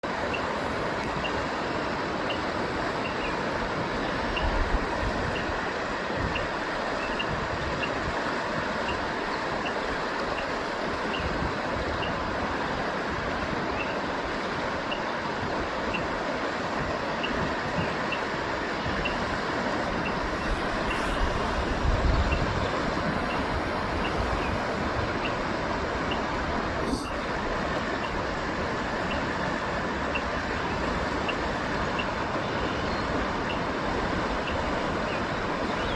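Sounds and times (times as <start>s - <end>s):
river water flowing: 0.0s - 35.9s
short high chirps: 20.4s - 21.9s, 26.8s - 27.3s.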